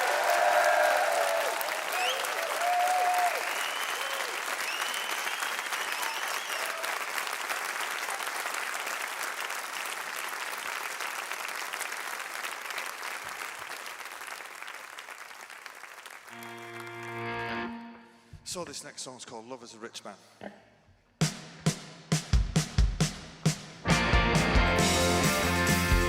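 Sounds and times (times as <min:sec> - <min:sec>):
audience applauding: 0:00.0 - 0:17.6.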